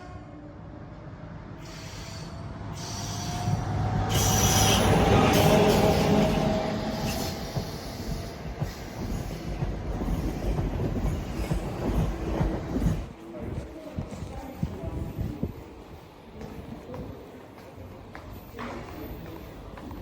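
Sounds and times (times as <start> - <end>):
train rumble: 1.2 - 20.0
train wheels squealing: 1.6 - 12.1.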